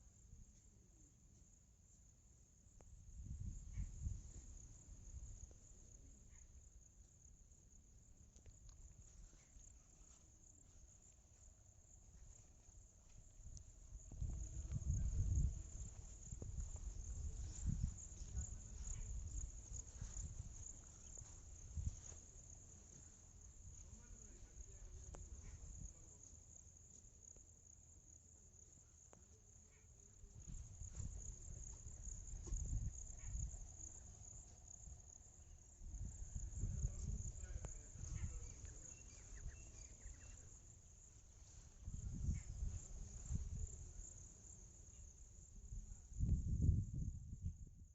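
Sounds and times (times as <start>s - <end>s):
field insects chorus: 0.0s - 47.9s.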